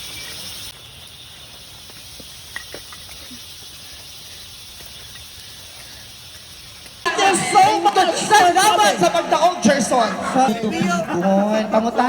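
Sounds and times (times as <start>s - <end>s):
high hiss: 0.0s - 12.0s
faint ticks: 1.4s - 7.1s.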